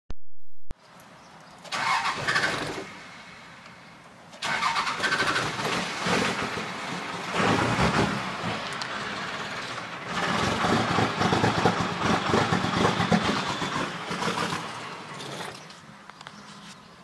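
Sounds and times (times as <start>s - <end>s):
diesel engine cranking on starter: 1.6s - 3.4s, 4.3s - 15.8s.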